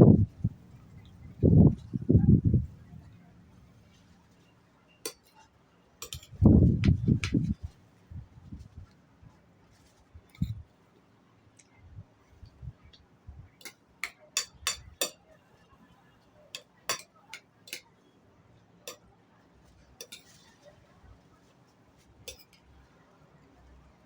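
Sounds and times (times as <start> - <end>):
cutlery clinking on plate: 5.1 - 6.4, 13.6 - 15.2, 16.6 - 17.9, 20.0 - 20.5, 22.3 - 22.6.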